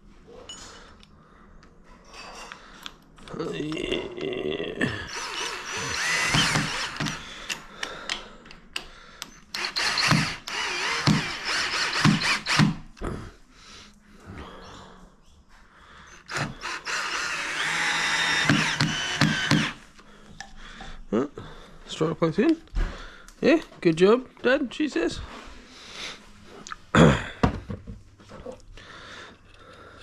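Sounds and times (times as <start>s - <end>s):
cordless drill running: 5.1s - 7.6s, 9.5s - 12.8s, 16.3s - 19.9s
drill clicks: 5.1s - 8.2s, 8.8s - 12.8s, 16.3s - 19.8s.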